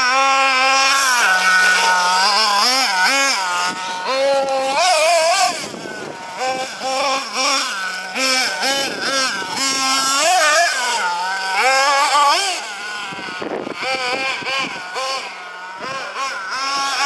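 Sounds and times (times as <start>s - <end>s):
small nitro engine revving: 0.0s - 17.0s.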